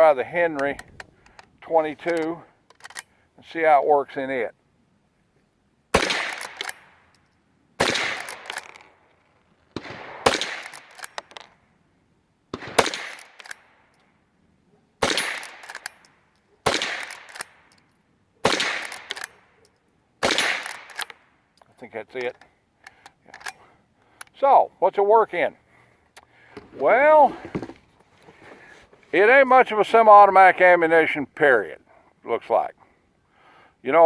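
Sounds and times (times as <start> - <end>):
rifle action clicks: 0.5 - 3.2, 6.0 - 11.6, 12.6 - 14.1, 15.0 - 24.4
rifle shots: 5.9 - 7.0, 7.8 - 9.0, 9.7 - 11.4, 12.5 - 13.8, 15.0 - 16.0, 16.6 - 17.7, 18.4 - 19.4, 20.2 - 21.3.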